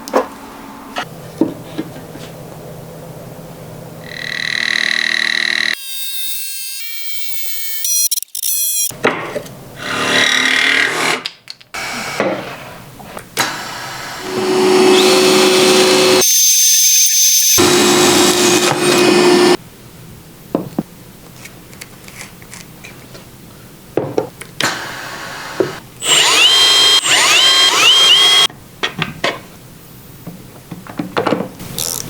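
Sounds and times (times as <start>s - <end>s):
power tool humming: 13.4s - 19.6s, 24.6s - 28.5s
workshop tool sounds: 31.6s - 32.0s.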